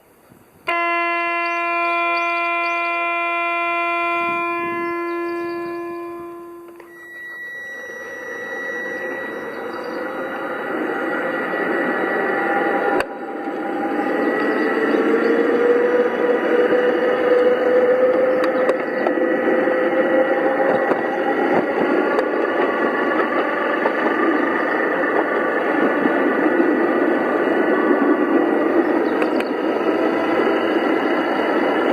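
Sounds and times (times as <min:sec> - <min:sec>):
faint steady whine: 0:00.0 - 0:15.0
model train horn: 0:00.6 - 0:10.4.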